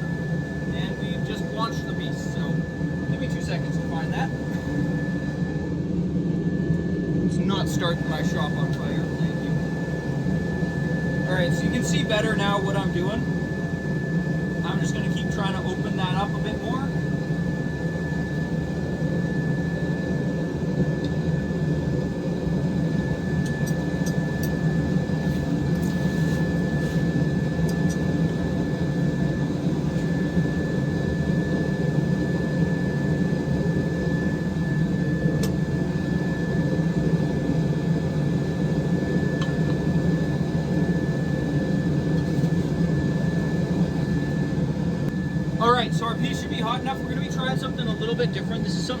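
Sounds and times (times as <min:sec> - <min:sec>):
thin high whine: 0:42.2 - 0:49.0.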